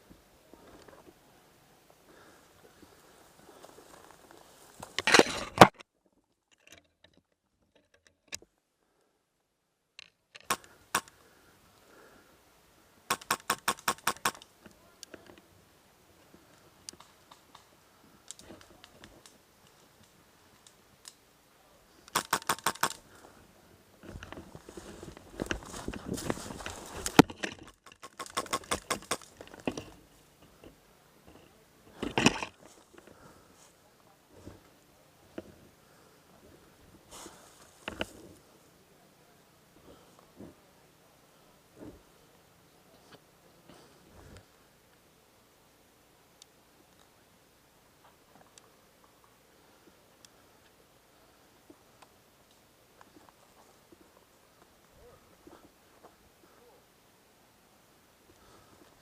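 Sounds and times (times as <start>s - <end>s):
sharp clicks clattering: 13.1s - 15.2s, 22.1s - 23.0s, 27.0s - 30.0s
footsteps crushing dry twigs: 24.0s - 33.8s.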